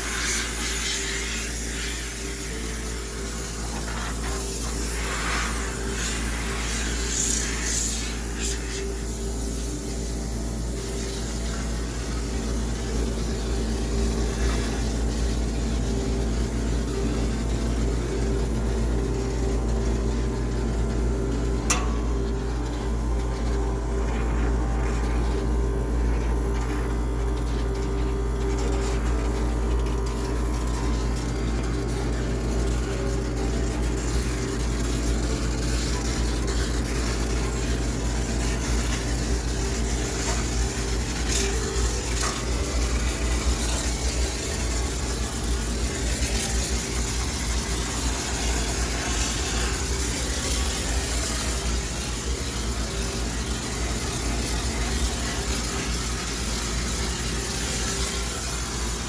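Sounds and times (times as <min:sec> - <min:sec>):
steam hissing: 0:00.0 - 0:15.4, 0:34.4 - 0:59.0
machine hum: 0:00.0 - 0:59.0.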